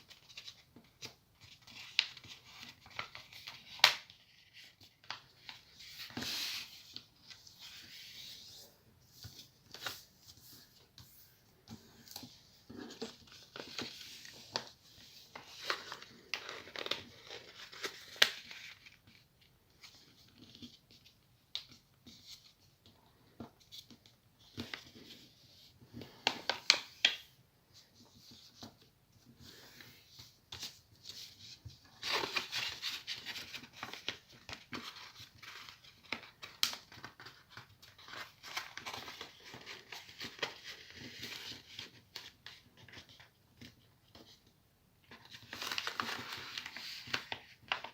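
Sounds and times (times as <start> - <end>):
paper crinkling and rustling: 0.0 - 22.7, 27.9 - 44.5, 45.1 - 47.9.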